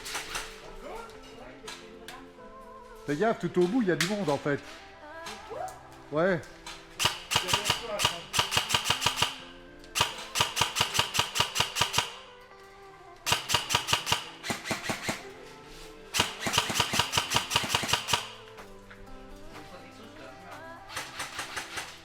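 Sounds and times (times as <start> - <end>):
airsoft rifle rapid firing: 7.0 - 12.3, 13.2 - 15.3, 16.1 - 18.6, 20.9 - 22.0.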